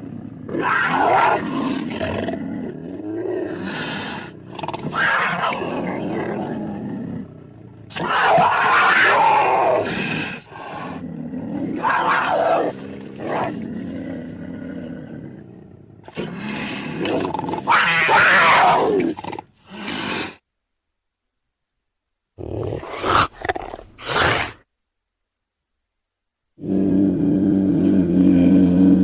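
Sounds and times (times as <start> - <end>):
low growl: 0.0 - 19.5, 26.6 - 29.0
big cat snarling and roaring: 0.0 - 20.4, 22.4 - 24.6, 26.6 - 29.0.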